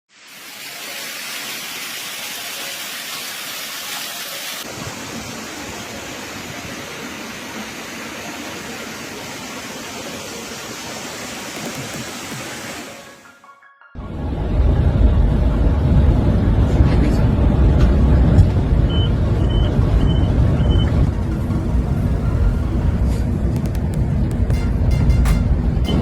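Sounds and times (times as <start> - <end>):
blizzard wind rushing: 14.1 - 24.3.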